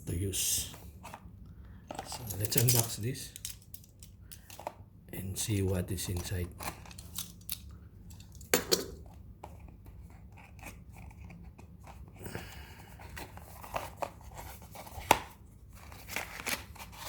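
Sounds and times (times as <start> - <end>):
packaging clicks and crinkling: 2.0 - 4.8, 6.0 - 8.5.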